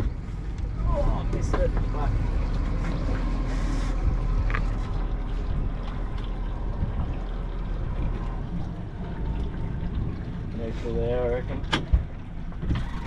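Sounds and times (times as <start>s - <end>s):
boat engine low rumble: 0.0s - 13.0s.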